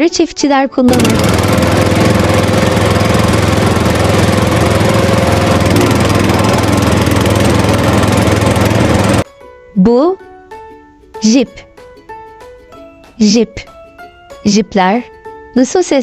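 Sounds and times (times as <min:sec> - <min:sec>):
tractor engine chugging: 0:00.9 - 0:09.2.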